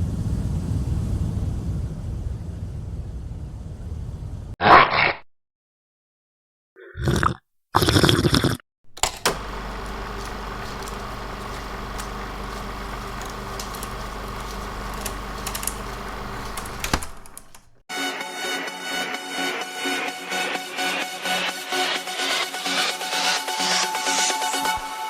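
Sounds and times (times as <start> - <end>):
film projector running: 8.9 - 17.8.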